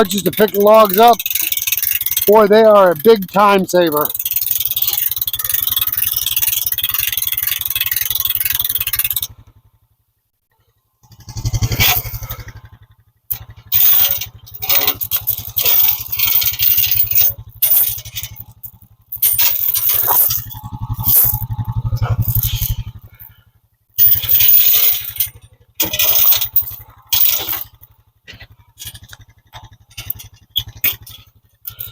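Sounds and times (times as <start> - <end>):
loose metal rattling and scraping: 0.0 - 9.4, 11.1 - 23.4, 24.0 - 31.9
vehicle engine running: 0.0 - 31.9
metallic clanks: 13.3 - 23.3, 24.0 - 31.9.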